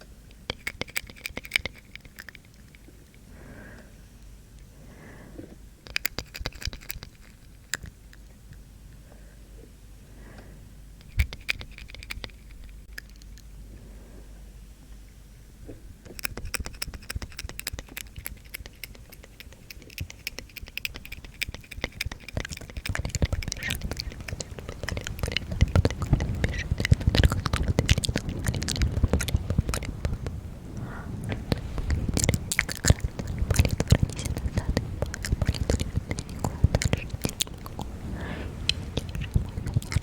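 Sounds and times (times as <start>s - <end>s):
rapid clicking and crackling: 16.1s - 30.4s, 31.3s - 40.0s
low rubbing rumble: 22.9s - 40.0s.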